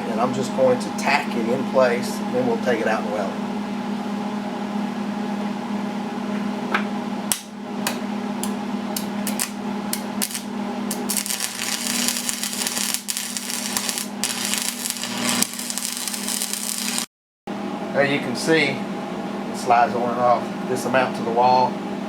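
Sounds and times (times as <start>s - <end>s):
welder hum: 8.4s - 17.1s
welding arc snapping and crackling: 9.0s - 17.1s.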